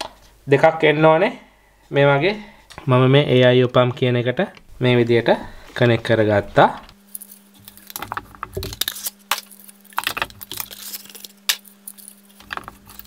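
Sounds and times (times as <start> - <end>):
steady low hum: 0.0 - 13.0
plastic parts clicking and rattling: 7.2 - 13.0.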